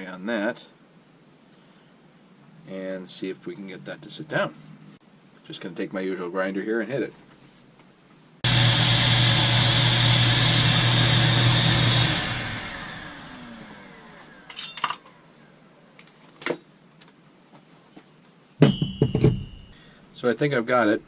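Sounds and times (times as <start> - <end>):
electric grinder grinding metal: 8.5 - 14.5.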